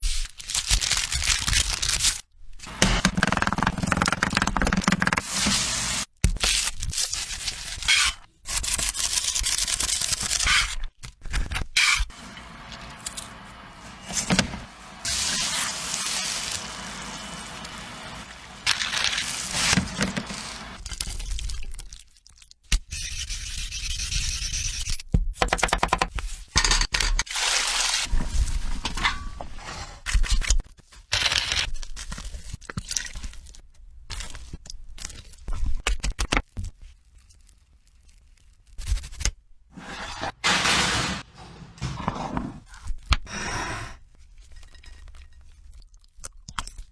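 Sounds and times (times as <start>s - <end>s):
cooking hiss: 5.2s - 6.1s, 12.1s - 20.8s.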